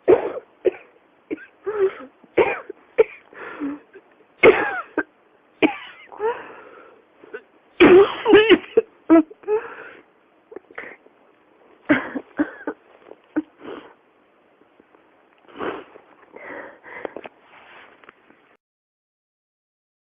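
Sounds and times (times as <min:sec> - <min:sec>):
person coughing: 0:00.0 - 0:03.8, 0:04.4 - 0:06.2, 0:07.3 - 0:09.4, 0:11.9 - 0:13.8.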